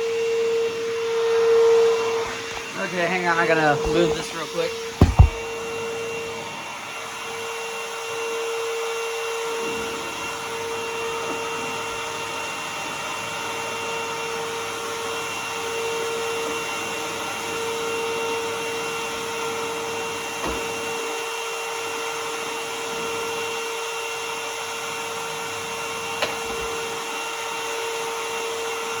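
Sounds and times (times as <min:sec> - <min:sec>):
brief knocks: 0:05.0 - 0:05.5.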